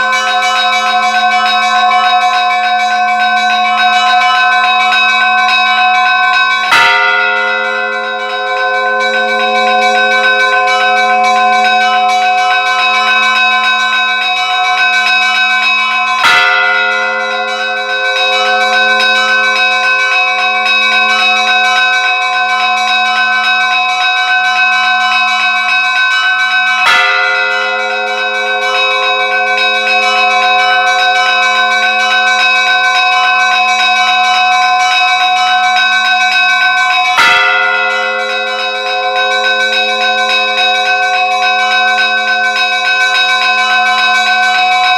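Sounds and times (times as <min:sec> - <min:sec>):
large church bell ringing: 0:00.0 - 0:44.9.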